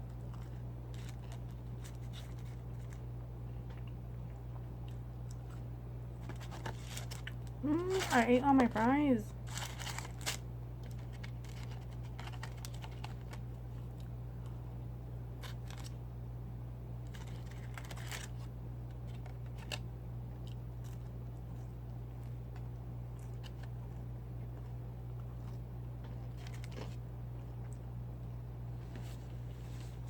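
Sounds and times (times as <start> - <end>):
low steady hum: 0.0 - 30.0
chewing crunches and clicks: 3.6 - 5.6, 19.0 - 27.9.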